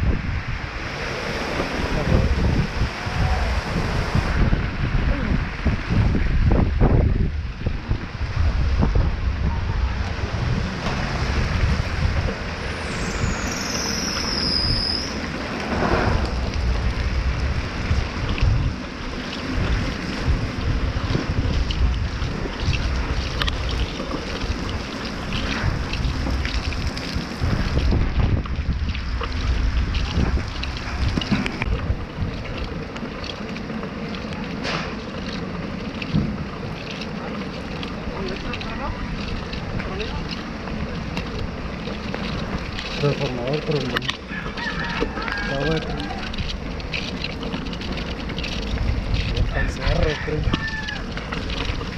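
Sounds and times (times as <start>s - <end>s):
storm wind buffeting microphone: 0.0s - 51.9s
high whine falling in pitch: 11.7s - 17.7s
small ticks and clicks: 13.5s - 51.9s.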